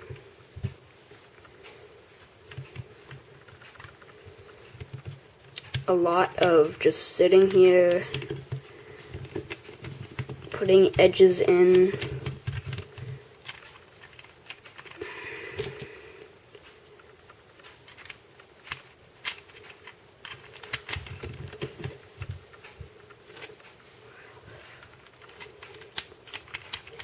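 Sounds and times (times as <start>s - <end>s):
plastic puzzle pieces clicking: 7.4s - 15.9s, 17.0s - 23.7s, 24.8s - 27.0s.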